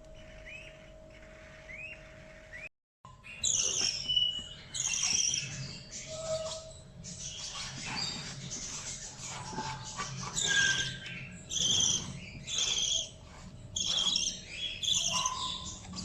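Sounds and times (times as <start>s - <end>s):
budgerigar chick calling: 3.2s - 16.0s.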